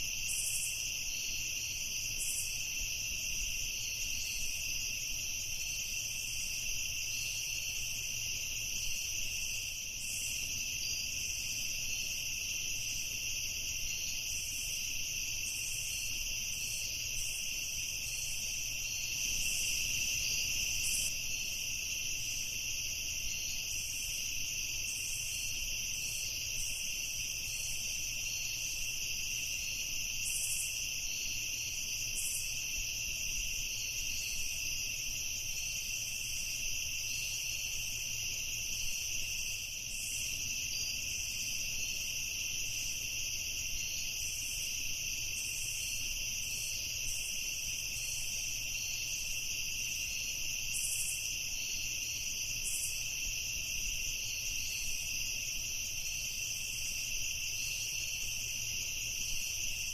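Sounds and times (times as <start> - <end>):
crickets and insects trilling: 0.0 - 59.9
high insect chirps: 0.0 - 59.9.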